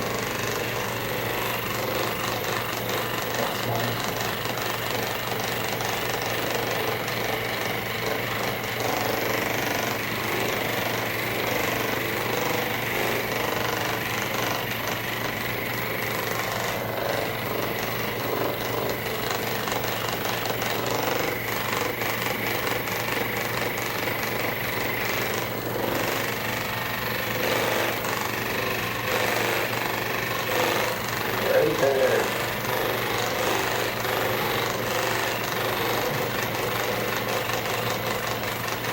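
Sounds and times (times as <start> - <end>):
massage gun hammering: 0.0 - 0.8.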